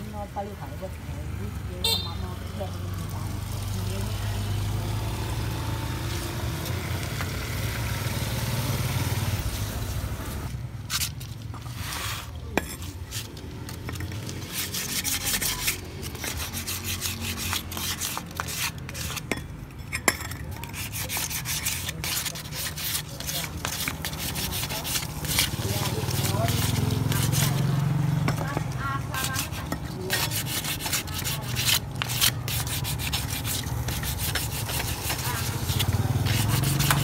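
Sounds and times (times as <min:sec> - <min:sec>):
low vehicle hum: 0:00.0 - 0:20.0
scraping and rubbing metal parts: 0:10.8 - 0:37.0.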